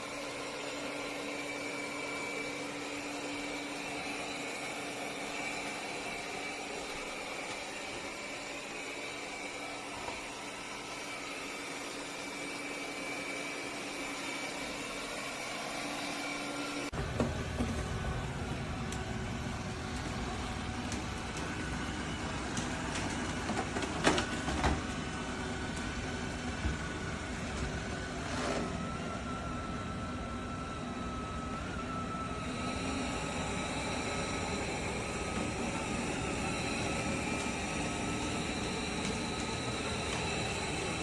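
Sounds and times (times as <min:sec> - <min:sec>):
robot vacuum motor hum: 0:00.1 - 0:41.0
thin steady whine: 0:25.0 - 0:41.0.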